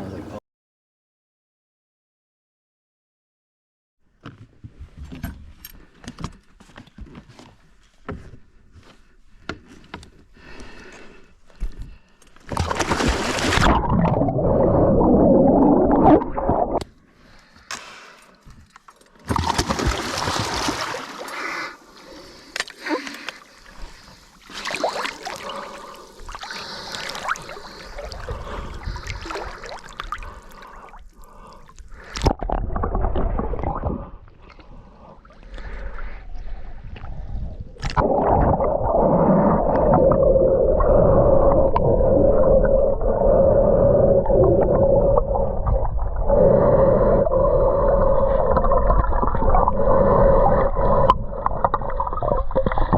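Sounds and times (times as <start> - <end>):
water sloshing and gurgling: 11.5 - 17.4, 18.3 - 52.9.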